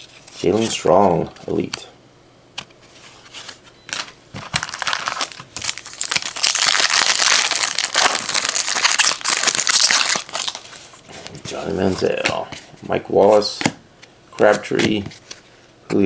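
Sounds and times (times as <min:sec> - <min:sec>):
wrapper crinkling: 0:04.4 - 0:11.0.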